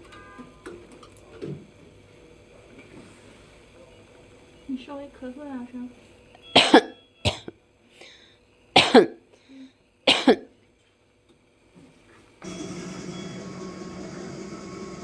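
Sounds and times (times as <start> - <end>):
woman coughing: 6.6 - 7.6, 8.8 - 9.2, 10.1 - 10.5.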